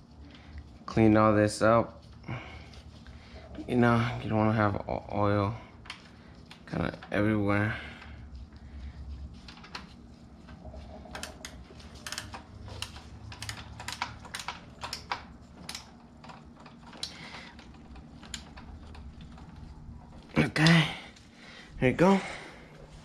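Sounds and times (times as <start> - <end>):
tools clicking and tapping: 10.5 - 20.8.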